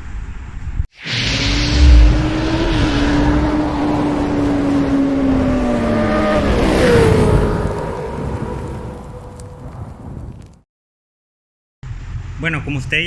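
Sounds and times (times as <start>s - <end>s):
motorcycle engine with abnormal noise: 1.8s - 9.6s.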